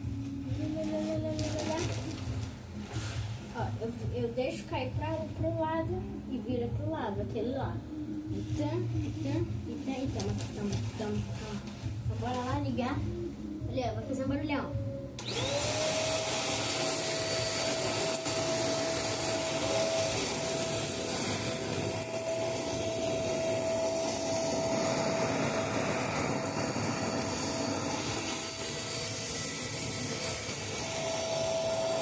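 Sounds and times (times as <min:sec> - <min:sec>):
vacuum cleaner running: 0:00.0 - 0:03.9, 0:15.2 - 0:32.0.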